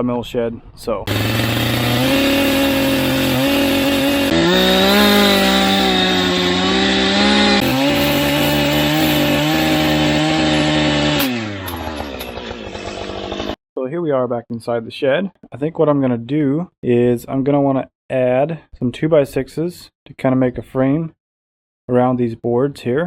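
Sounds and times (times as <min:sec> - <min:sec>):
chainsaw running at high revs: 0:01.1 - 0:13.6.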